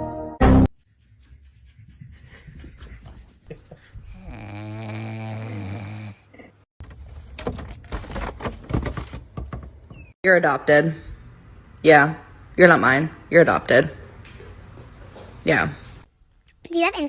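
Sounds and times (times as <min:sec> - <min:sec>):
dog snoring: 0:04.1 - 0:06.5.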